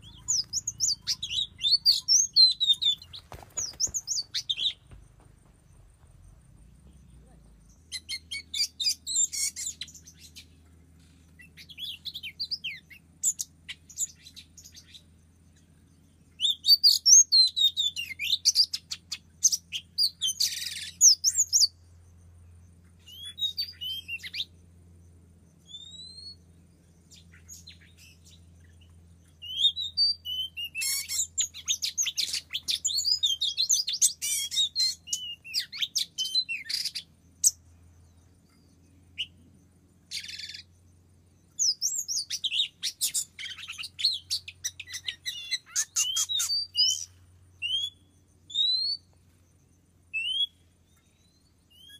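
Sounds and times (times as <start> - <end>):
bird whistles and chirps: 0.0 - 4.9, 7.7 - 15.1, 16.3 - 21.8, 23.0 - 24.5, 25.6 - 26.4, 27.1 - 37.6, 40.1 - 40.7, 41.5 - 49.1, 50.1 - 51.9.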